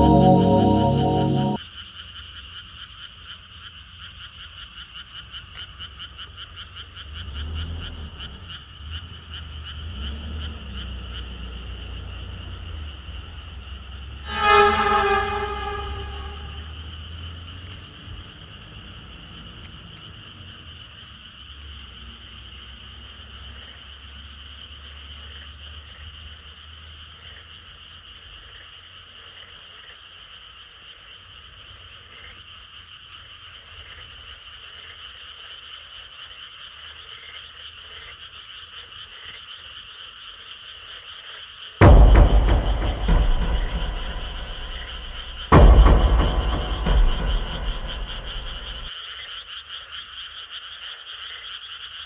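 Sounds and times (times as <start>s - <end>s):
high-pitched trill: 0.0s - 1.6s
frogs croaking: 2.0s - 14.1s, 16.1s - 41.8s, 46.0s - 52.0s.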